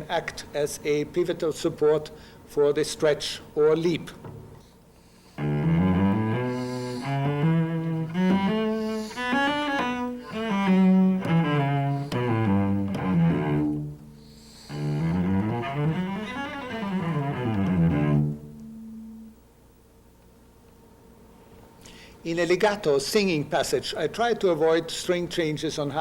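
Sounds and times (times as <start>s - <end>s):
bowed cello scales: 5.3s - 19.3s.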